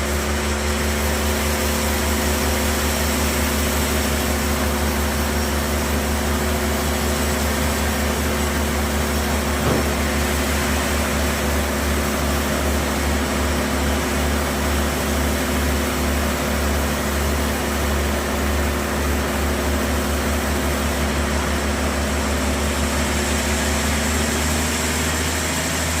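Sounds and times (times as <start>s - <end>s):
sawmill saw cutting log: 0.0s - 26.0s
short knock: 9.6s - 10.1s.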